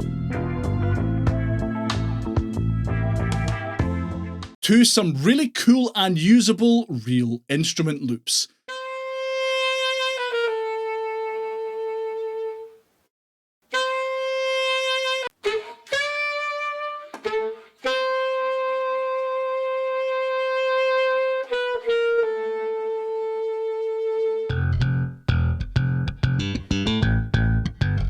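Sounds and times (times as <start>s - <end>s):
saxophone loop: 4.6s - 12.7s.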